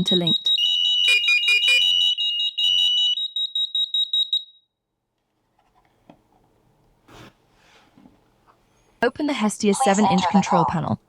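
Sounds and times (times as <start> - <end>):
smoke alarms beeping: 0.0 - 4.7.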